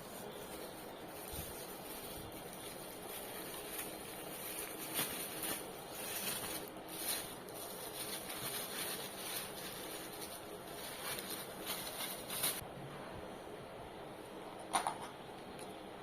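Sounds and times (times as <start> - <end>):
packaging rustling and tapping: 2.4 - 12.6.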